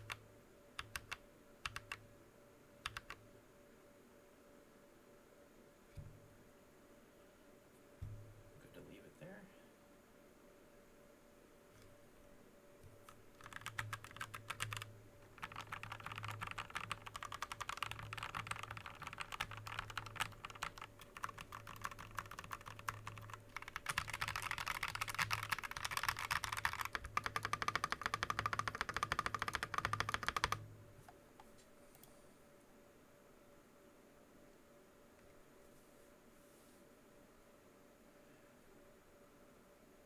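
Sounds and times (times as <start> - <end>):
mechanical keyboard typing: 0.8 - 2.0, 2.8 - 3.2, 13.0 - 30.6.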